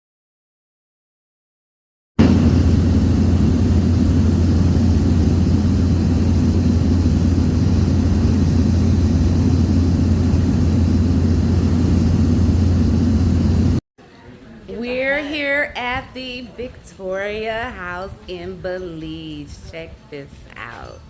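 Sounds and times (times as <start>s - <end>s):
loud low engine drone: 2.2s - 13.8s.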